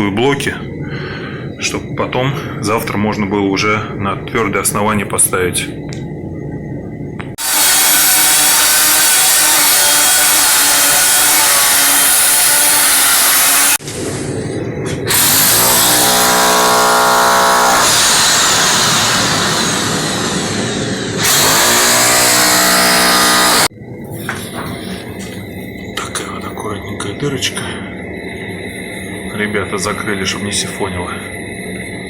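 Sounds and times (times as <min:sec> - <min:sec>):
electric drill running: 0:07.4 - 0:13.8, 0:15.1 - 0:20.6, 0:21.2 - 0:23.7.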